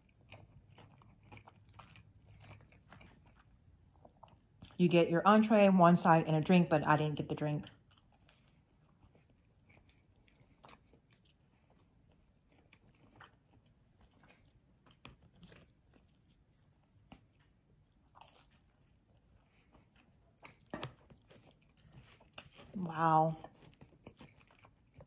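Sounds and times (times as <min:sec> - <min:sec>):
food being bitten and chewed: 0:00.0 - 0:04.8, 0:07.6 - 0:25.0.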